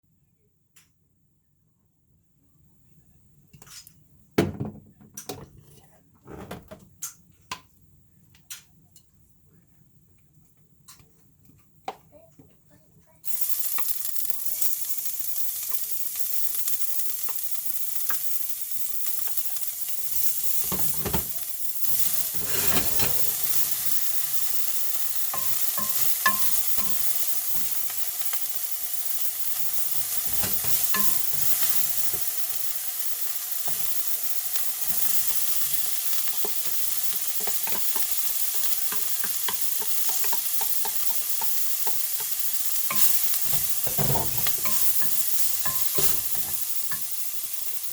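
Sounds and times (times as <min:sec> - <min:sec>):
food sizzling in a pan: 0:13.1 - 0:47.9
utensil scraping a pan: 0:20.6 - 0:24.0, 0:38.9 - 0:47.1.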